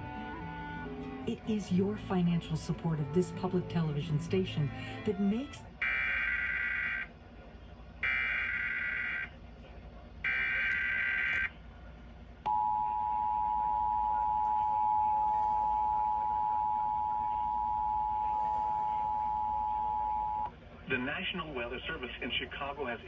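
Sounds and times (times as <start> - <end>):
two-tone attention signal: 12.5 - 20.5.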